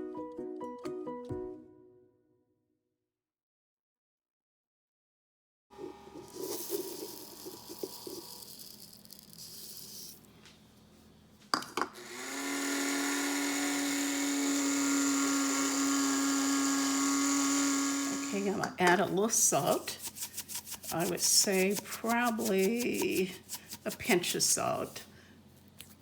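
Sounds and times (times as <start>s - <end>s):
coffee grinder motor whirring: 5.8s - 10.2s, 12.0s - 18.8s.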